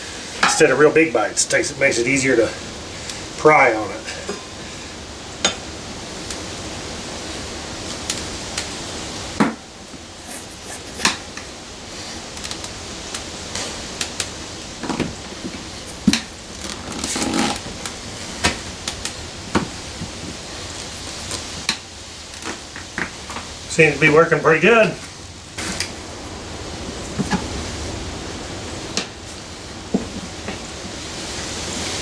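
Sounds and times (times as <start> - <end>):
steady low hiss: 0.0 - 32.0
short scraping rush: 10.1 - 12.3
tire irons clicking on wheel rim: 10.1 - 23.8.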